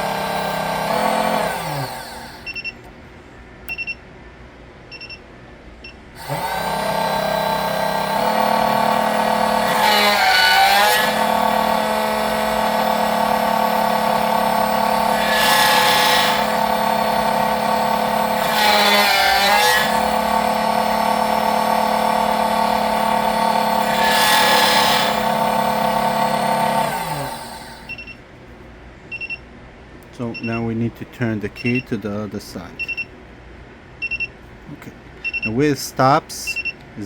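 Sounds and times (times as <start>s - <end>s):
key cutting machine motor: 0.0s - 2.6s, 6.2s - 28.0s.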